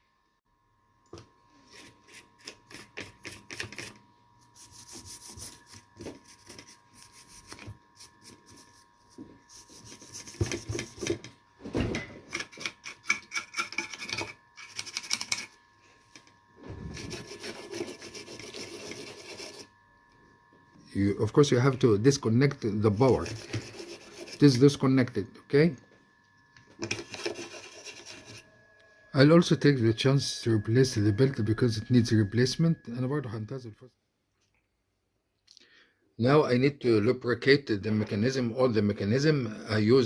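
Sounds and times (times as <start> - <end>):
brush scrubbing circuit board: 1.6 - 11.2, 16.7 - 19.7, 21.6 - 24.9, 26.8 - 28.6.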